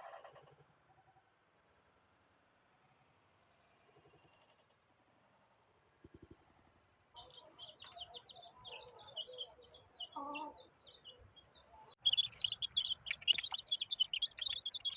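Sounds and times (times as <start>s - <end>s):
small birds chirping: 7.2s - 14.9s.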